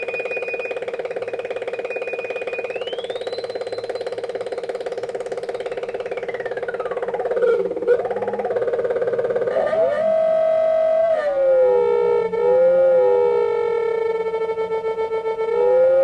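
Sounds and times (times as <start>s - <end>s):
high whistling tone: 0.0s - 4.6s
harsh buzzing synth drone: 0.0s - 16.0s.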